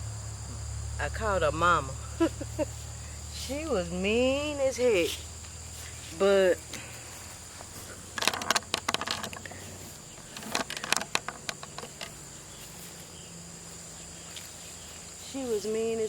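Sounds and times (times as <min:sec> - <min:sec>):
insects trilling: 0:00.0 - 0:16.0
crackling clicks: 0:10.2 - 0:12.2.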